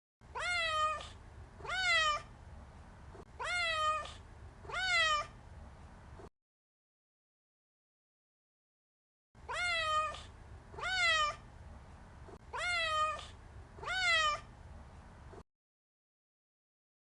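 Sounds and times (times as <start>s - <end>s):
cat meowing: 0.3s - 2.3s, 3.4s - 5.4s, 9.4s - 11.4s, 12.5s - 14.5s.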